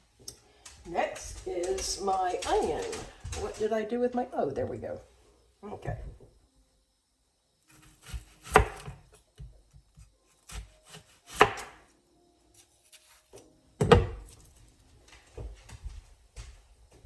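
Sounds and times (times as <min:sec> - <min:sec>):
knife chopping onion on board: 0:07.7 - 0:11.8, 0:12.9 - 0:14.4.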